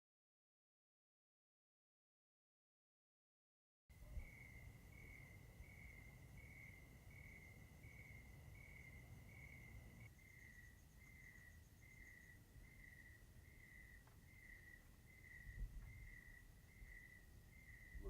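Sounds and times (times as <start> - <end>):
faint crickets chirping: 3.9 - 18.0.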